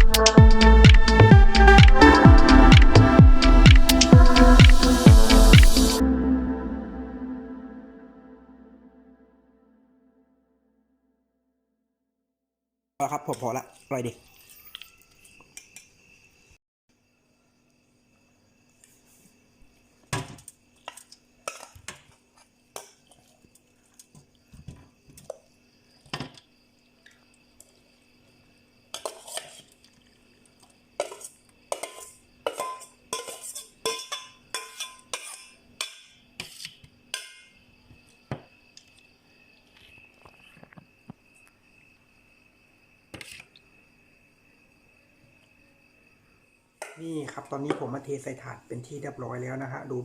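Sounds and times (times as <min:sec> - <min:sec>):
spoon clinking and scraping dishes: 0:29.0 - 0:29.7, 0:31.0 - 0:37.5.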